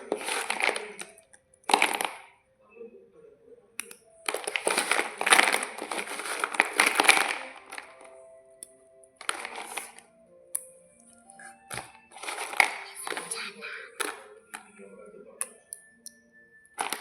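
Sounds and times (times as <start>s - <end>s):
slate bars crunching: 4.3s - 8.0s.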